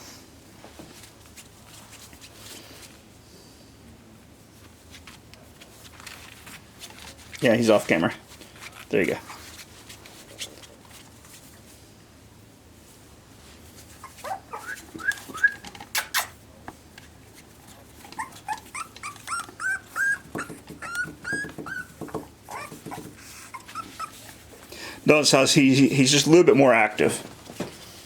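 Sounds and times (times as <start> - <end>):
puppy whimpering: 14.0 - 16.4, 17.9 - 24.5.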